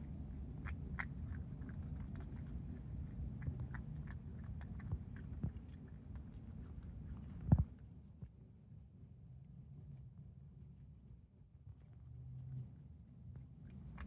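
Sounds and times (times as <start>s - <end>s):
animal chewing food: 0.0s - 8.0s
low background rumble: 0.0s - 14.0s.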